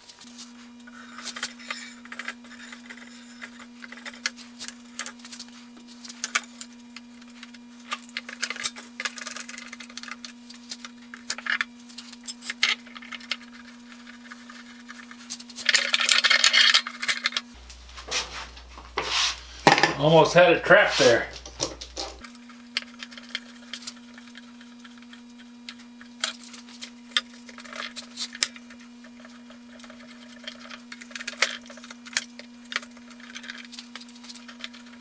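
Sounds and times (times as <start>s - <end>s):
scraping rub: 0.0s - 6.6s, 17.5s - 19.7s, 20.8s - 22.2s
steady low hum: 0.0s - 35.0s.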